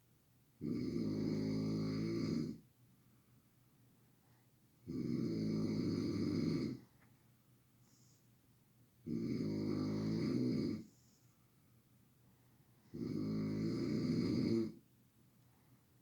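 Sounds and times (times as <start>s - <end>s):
man snoring loudly: 0.6s - 2.6s, 4.9s - 6.8s, 9.1s - 10.8s, 13.0s - 14.8s.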